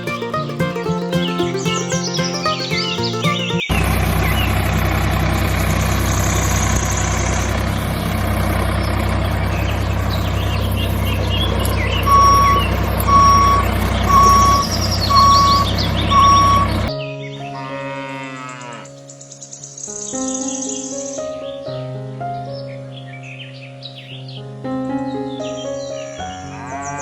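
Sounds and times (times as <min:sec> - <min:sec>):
vehicle engine idling: 0:00.0 - 0:16.9
birds chirping faintly: 0:00.0 - 0:17.6
reversing alarm beeping: 0:11.2 - 0:16.9.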